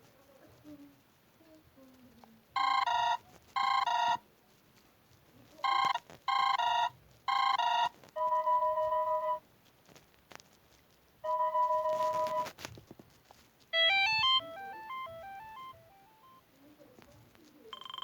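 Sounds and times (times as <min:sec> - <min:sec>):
electronic trilling ringtone: 0:02.6 - 0:04.2, 0:05.7 - 0:09.4, 0:11.3 - 0:12.5, 0:13.8 - 0:16.4, 0:17.8 - 0:18.0
steady electronic tone: 0:13.8 - 0:16.3.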